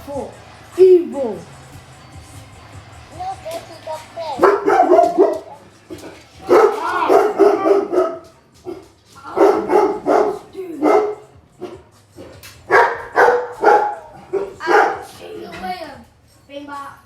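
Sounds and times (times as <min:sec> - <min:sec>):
dog barking: 0:04.4 - 0:15.2.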